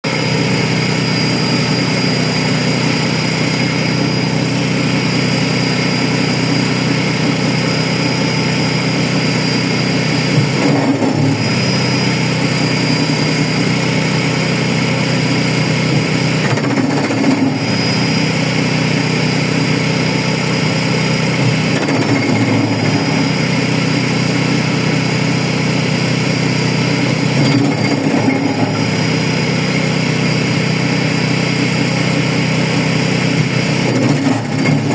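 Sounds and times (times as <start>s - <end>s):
wood chipper engine running: 0.0s - 34.9s.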